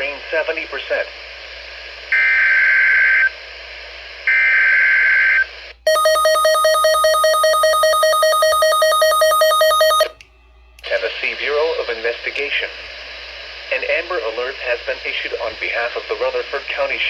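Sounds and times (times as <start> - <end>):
screechy digital header tones: 5.9 - 10.2.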